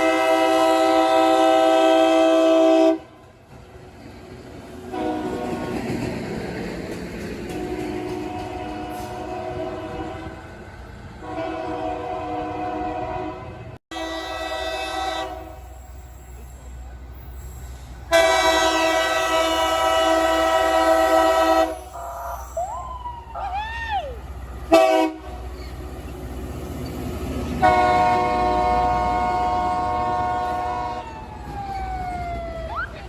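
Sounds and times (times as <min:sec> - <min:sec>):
train air horn blasts: 0:00.0 - 0:03.2, 0:04.9 - 0:05.8, 0:07.5 - 0:10.5, 0:11.2 - 0:16.0, 0:18.1 - 0:22.6, 0:24.7 - 0:25.5, 0:27.6 - 0:31.1
low train rumble: 0:00.0 - 0:33.0.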